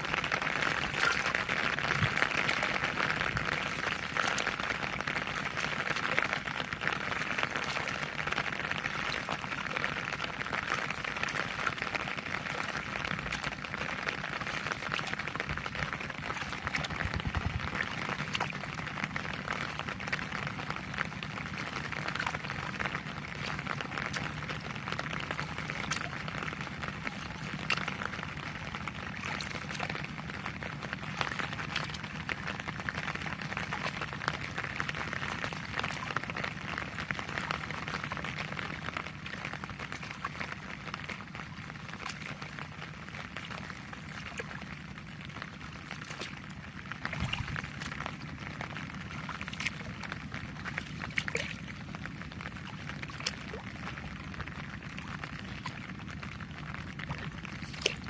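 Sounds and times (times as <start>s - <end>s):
heavy rain falling: 0.0s - 57.8s.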